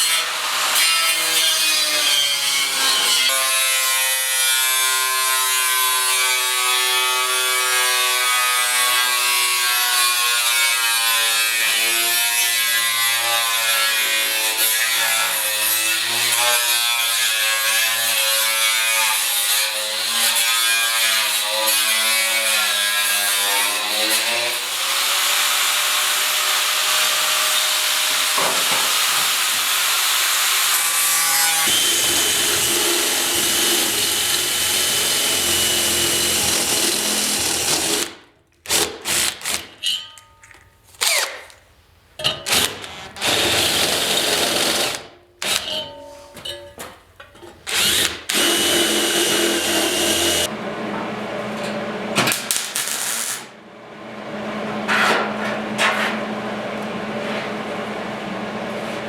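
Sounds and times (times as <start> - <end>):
power tool cutting steel: 0.0 - 38.2, 47.7 - 50.5.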